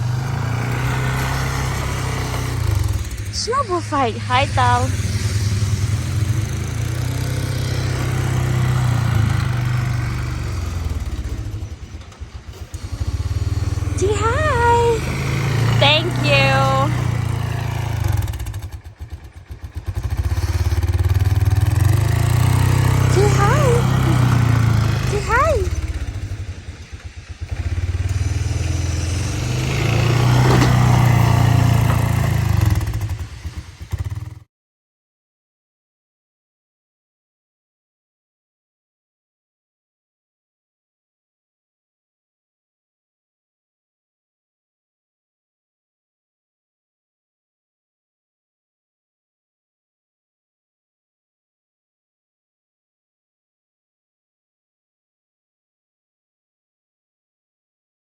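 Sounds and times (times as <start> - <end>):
engine humming: 0.0 - 33.2.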